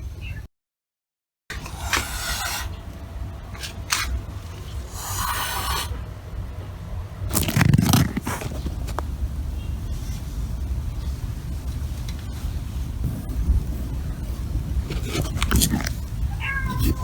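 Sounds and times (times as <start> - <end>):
distant traffic rumble: 1.5 - 17.0
scraping and rustling: 7.3 - 17.0.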